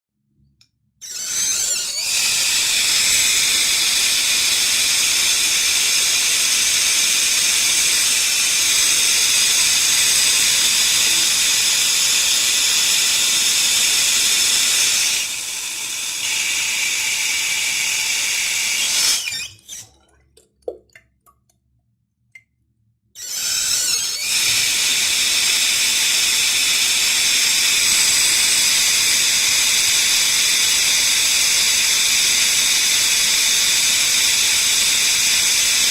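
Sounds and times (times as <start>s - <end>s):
water dripping: 19.6s - 22.6s.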